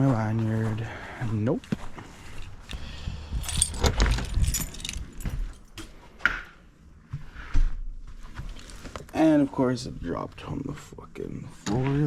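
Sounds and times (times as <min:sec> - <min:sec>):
keys jangling: 0:03.4 - 0:05.8.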